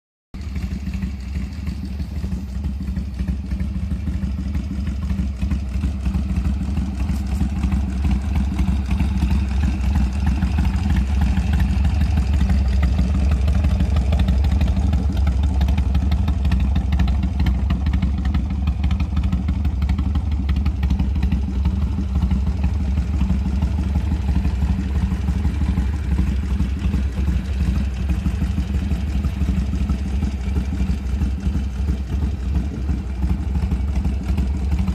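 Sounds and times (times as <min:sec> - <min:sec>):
motorcycle engine idling: 0:00.4 - 0:34.9.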